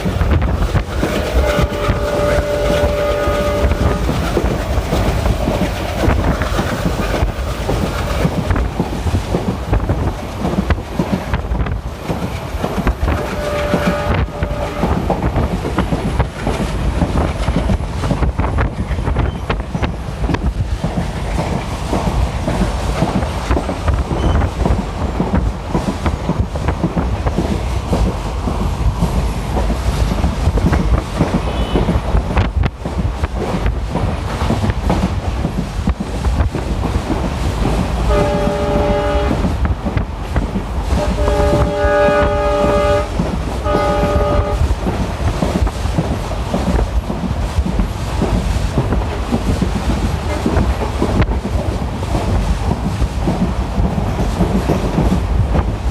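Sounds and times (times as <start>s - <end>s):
train wheels rumbling on track: 0.0s - 55.9s
train horn blasts: 1.3s - 4.2s, 13.1s - 15.1s, 31.4s - 32.0s, 38.0s - 39.6s, 40.9s - 44.7s.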